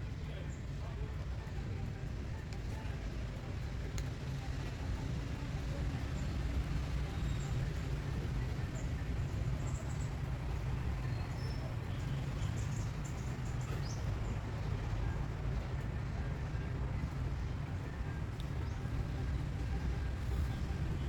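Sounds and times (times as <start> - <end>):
low outdoor rumble: 0.0 - 21.0.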